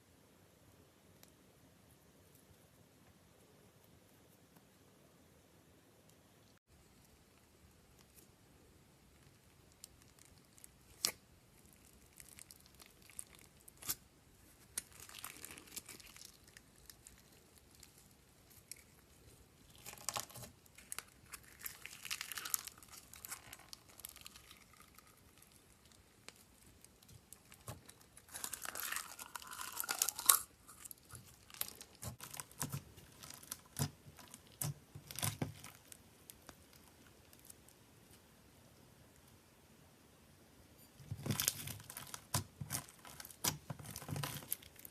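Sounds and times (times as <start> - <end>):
slime crackling and rustling: 6.7 - 38.2, 40.9 - 44.9.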